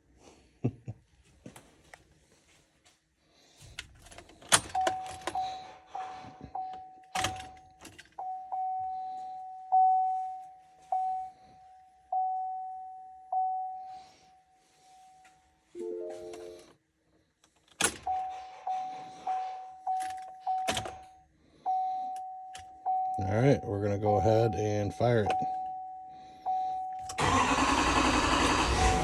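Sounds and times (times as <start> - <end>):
dashboard warning chime: 4.7 - 16.7, 18.1 - 27.5.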